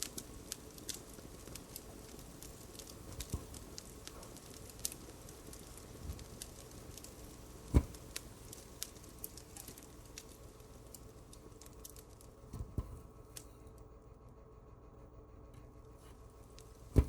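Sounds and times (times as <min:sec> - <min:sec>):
fireplace crackling: 0:00.0 - 0:13.9, 0:15.5 - 0:17.0
dull thumps: 0:07.7 - 0:08.1, 0:12.5 - 0:13.2.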